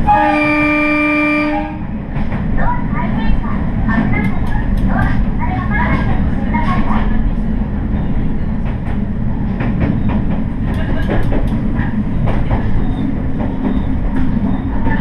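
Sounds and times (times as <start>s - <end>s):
train rumbling: 0.0s - 15.0s
wheels clicking over track: 8.0s - 15.0s.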